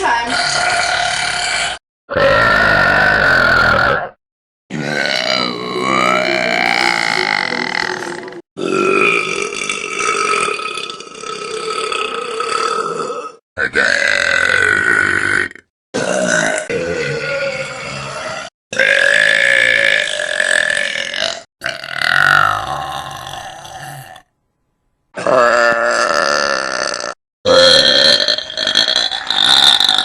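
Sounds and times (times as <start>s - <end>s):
people belching: 0.1s - 24.3s, 25.2s - 30.0s.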